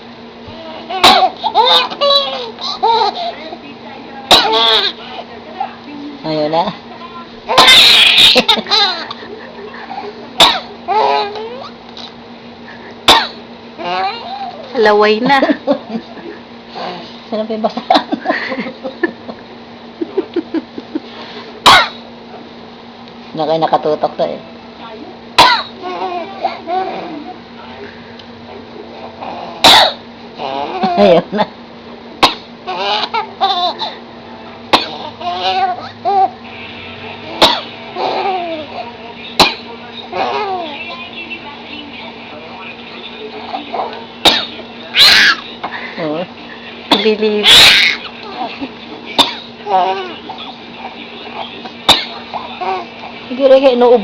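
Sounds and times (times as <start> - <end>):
person coughing: 10.4 - 10.7, 13.0 - 13.4, 25.4 - 25.8, 29.6 - 30.0, 34.8 - 35.1, 37.4 - 37.7, 39.4 - 39.7, 44.2 - 44.6, 49.2 - 49.5, 51.9 - 52.2.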